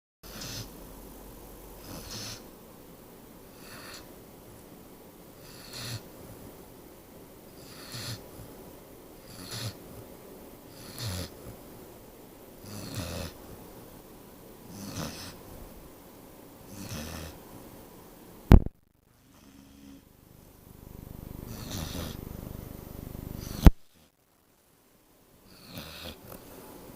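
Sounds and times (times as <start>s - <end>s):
pet snoring: 0.2s - 1.0s, 1.7s - 2.5s, 3.4s - 4.2s, 5.3s - 6.4s, 7.5s - 8.6s, 9.2s - 10.1s, 10.7s - 11.6s, 12.6s - 13.6s, 14.6s - 15.6s, 16.6s - 17.4s, 19.2s - 20.1s, 20.8s - 24.1s, 25.4s - 26.7s
sharp click: 18.5s - 18.7s
soft steady rumble: 20.2s - 23.7s.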